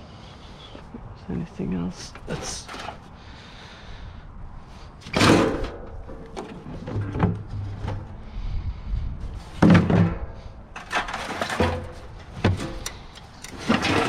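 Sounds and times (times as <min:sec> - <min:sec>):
scrap metal clanking: 0:02.2 - 0:03.1, 0:05.0 - 0:08.2, 0:09.4 - 0:14.0
loud metal clunk: 0:05.1 - 0:08.1, 0:09.6 - 0:12.9.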